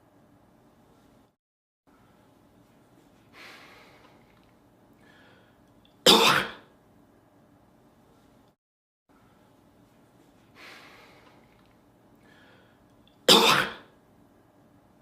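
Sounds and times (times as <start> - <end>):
man coughing: 6.1 - 6.6, 13.3 - 13.9.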